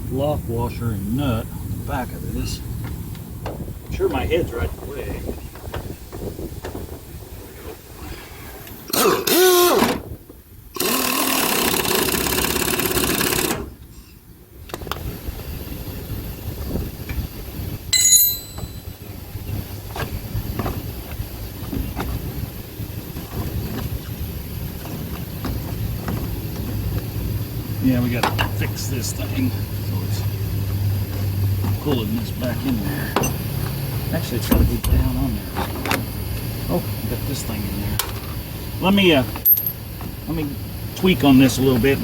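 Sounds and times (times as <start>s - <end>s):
power tool running: 10.8s - 13.7s
ringing metal clink: 18.0s - 19.0s, 39.5s - 39.8s.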